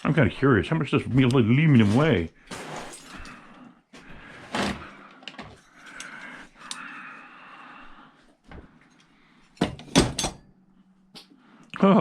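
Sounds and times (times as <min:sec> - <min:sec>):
scraping and rustling: 0:01.6 - 0:03.3.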